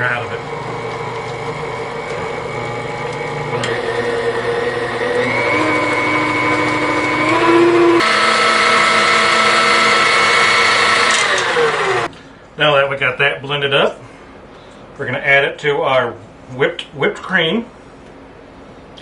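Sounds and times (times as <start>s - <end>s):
electric mixer running: 0.0s - 12.1s.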